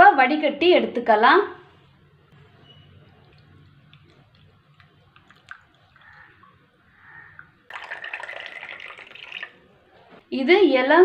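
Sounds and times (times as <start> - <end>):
liquid pouring into a cup: 2.4 - 9.9.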